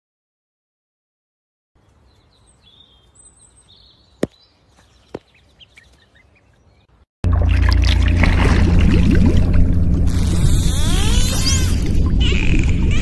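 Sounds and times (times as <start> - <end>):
small birds chirping: 1.8 - 7.0
loud rumbling noise: 7.3 - 13.0.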